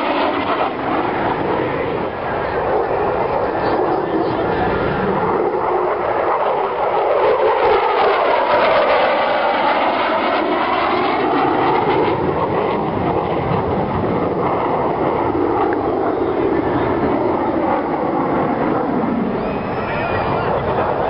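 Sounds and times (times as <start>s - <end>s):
turboprop aircraft passing: 0.0s - 21.0s.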